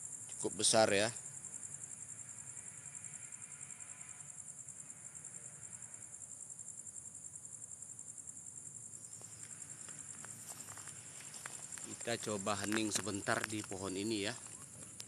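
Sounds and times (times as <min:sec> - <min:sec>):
night insects trilling: 0:00.0 - 0:15.0
faint clicks: 0:09.2 - 0:15.0.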